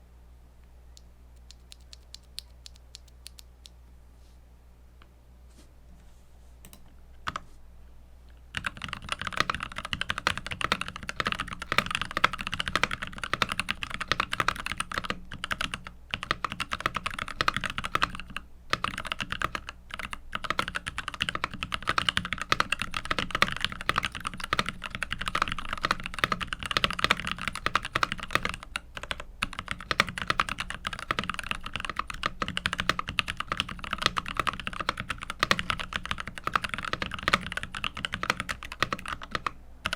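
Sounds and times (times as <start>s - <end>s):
fast typing on mechanical keyboard: 8.5s - 39.9s.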